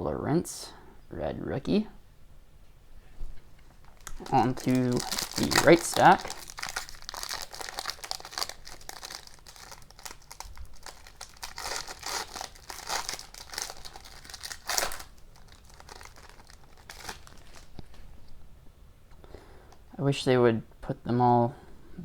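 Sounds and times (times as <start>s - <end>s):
foil wrapper crinkling and tearing: 3.8s - 18.0s.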